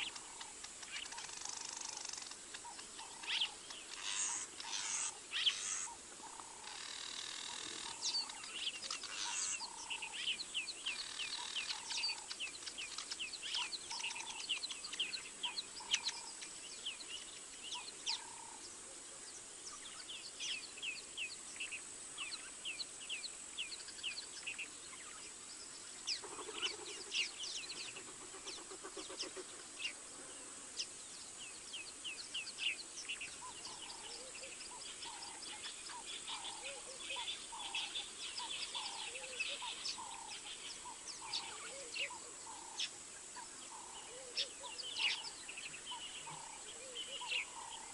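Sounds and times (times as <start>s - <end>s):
birds chirping: 0.0s - 47.9s
lower bird calls: 0.0s - 47.9s.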